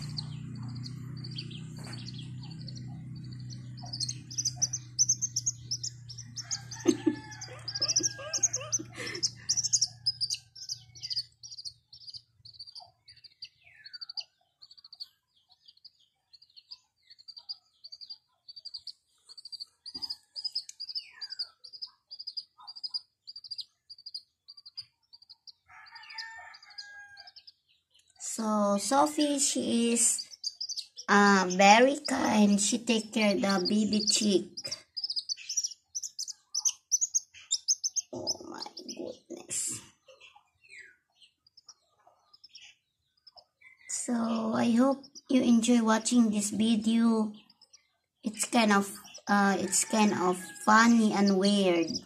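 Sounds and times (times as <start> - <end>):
baby chick peeping: 0.0 - 52.0.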